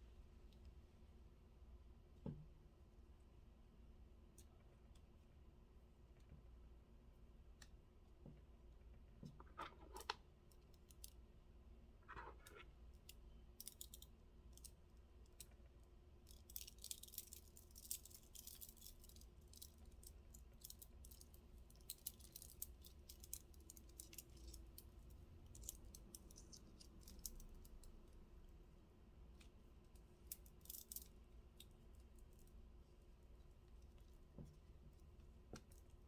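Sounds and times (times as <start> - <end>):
small objects clicking and rustling: 16.3 - 28.0, 30.3 - 31.7.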